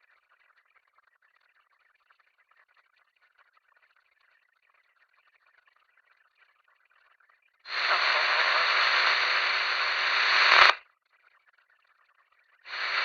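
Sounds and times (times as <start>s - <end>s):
radio static hiss: 7.7s - 10.8s, 12.7s - 13.0s.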